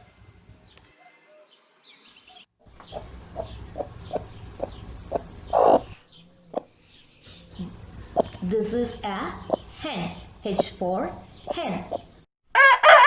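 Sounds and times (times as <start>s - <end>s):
hen clucking: 2.7s - 12.2s
hen squawk: 5.5s - 6.6s.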